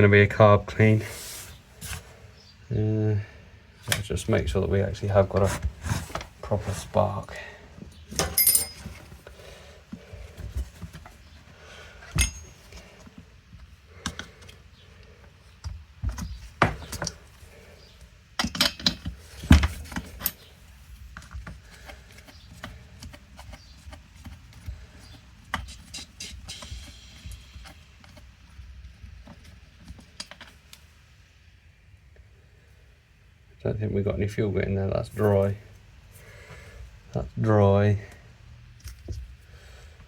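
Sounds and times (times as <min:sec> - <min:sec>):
metal tools clinking and knocking: 0:08.1 - 0:09.2, 0:12.1 - 0:12.9, 0:18.4 - 0:20.5.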